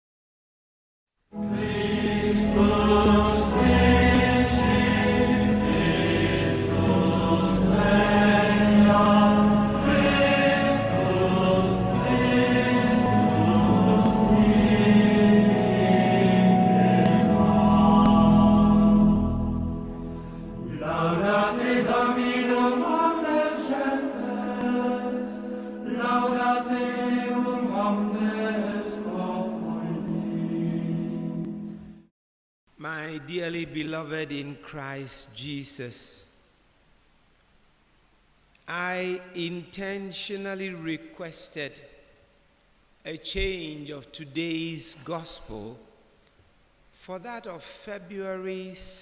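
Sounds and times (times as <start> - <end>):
steady drone: 1.4 - 21.7
voices chanting long notes: 1.4 - 31.6.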